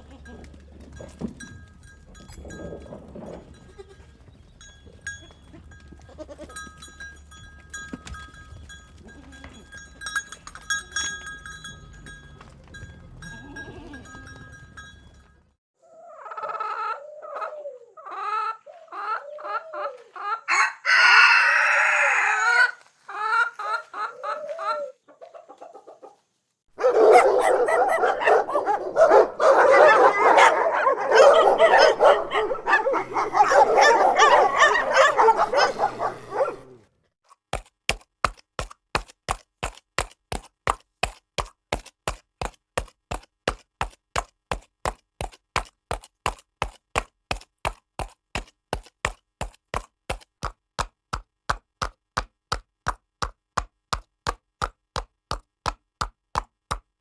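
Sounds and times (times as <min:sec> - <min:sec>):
hens clucking: 0:15.9 - 0:26.2, 0:26.8 - 0:36.8
rooster crowing: 0:20.5 - 0:22.8, 0:26.8 - 0:36.7
flock squawking: 0:27.4 - 0:36.7.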